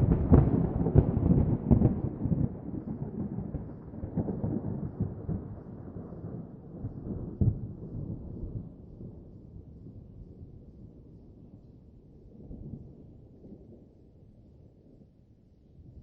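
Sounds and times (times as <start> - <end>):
thunder cracks and rumble: 0.0 - 9.3.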